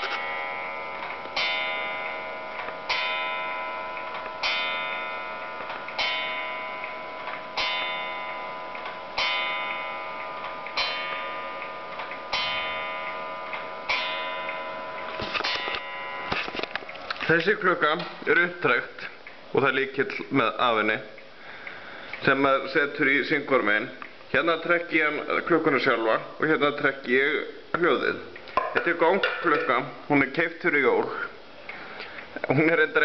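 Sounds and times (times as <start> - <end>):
clock gong striking: 0.0 - 16.7
pendulum ticking: 0.0 - 33.0.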